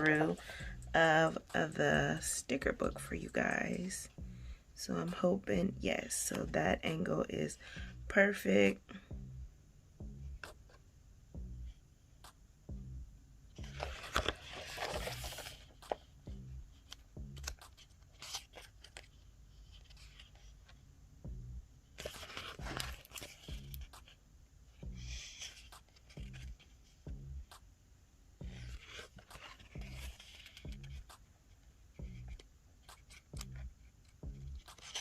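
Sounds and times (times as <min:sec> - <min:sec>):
paper rustling and crinkling: 0:13.6 - 0:16.2, 0:16.8 - 0:20.8, 0:22.0 - 0:24.2, 0:28.5 - 0:31.7, 0:32.3 - 0:35.0.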